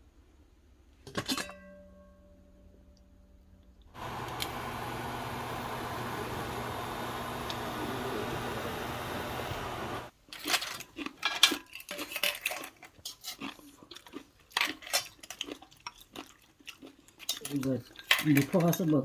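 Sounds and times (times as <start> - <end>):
shells and utensils clinking on dishes: 1.1 - 2.0, 10.3 - 13.6, 14.5 - 16.0, 17.1 - 19.0
steady whirring hum: 4.0 - 10.1.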